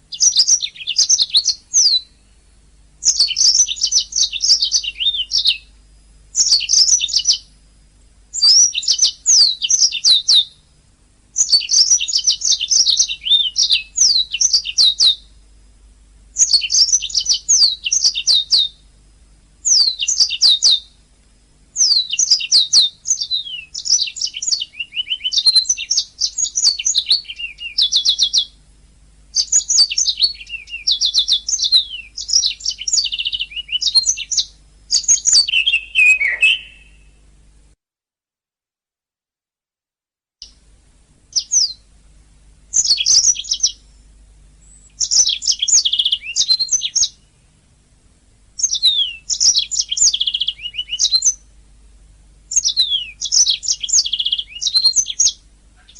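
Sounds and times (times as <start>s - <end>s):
canary singing: 0.1s - 2.4s, 3.0s - 7.6s, 8.3s - 10.7s, 11.4s - 15.3s, 16.4s - 18.9s, 19.6s - 21.0s, 21.7s - 28.6s, 29.3s - 37.2s, 41.3s - 41.9s, 42.7s - 44.0s, 44.6s - 47.4s, 48.6s - 51.5s, 52.5s - 55.9s.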